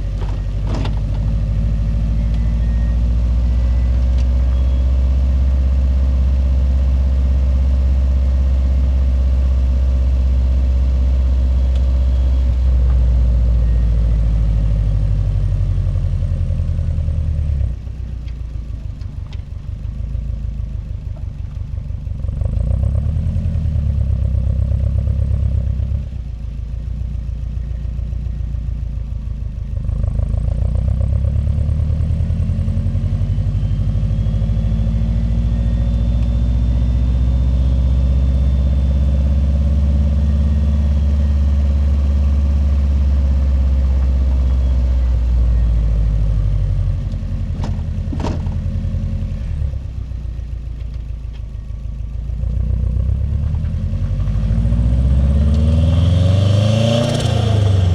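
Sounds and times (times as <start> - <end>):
car engine rumbling: 0.0 - 57.9.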